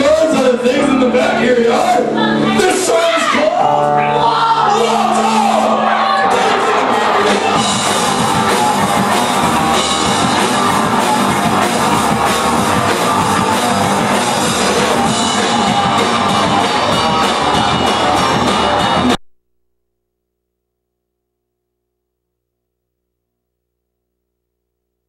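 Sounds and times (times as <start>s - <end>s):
loud rock music with drums: 0.0s - 19.3s.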